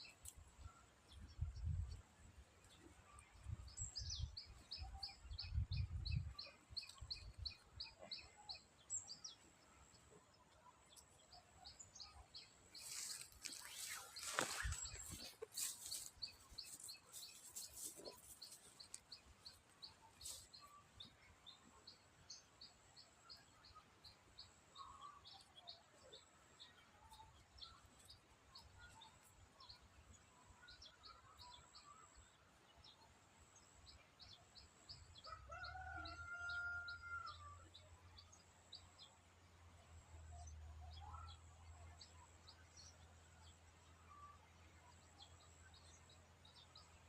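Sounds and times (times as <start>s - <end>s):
rooster crowing: 35.3s - 37.5s.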